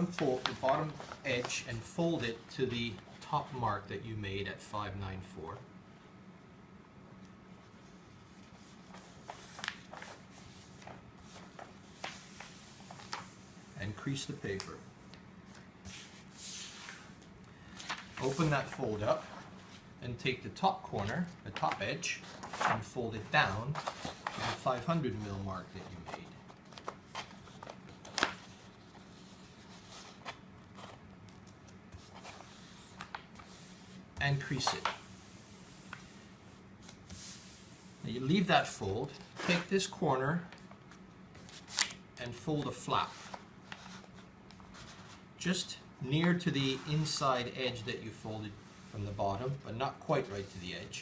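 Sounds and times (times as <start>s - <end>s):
paper rustling: 0.0s - 3.6s, 7.6s - 19.9s, 20.6s - 45.3s
sharp paper crackles: 8.9s - 10.2s.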